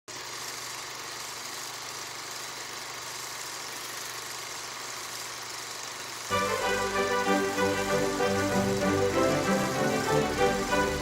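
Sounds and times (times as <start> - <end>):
mechanical whirring hiss: 0.2 - 11.0
music: 6.3 - 11.0.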